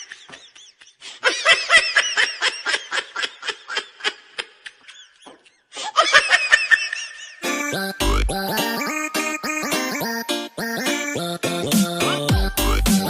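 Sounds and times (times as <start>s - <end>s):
rapid high-pitched laughter: 0.0s - 7.7s.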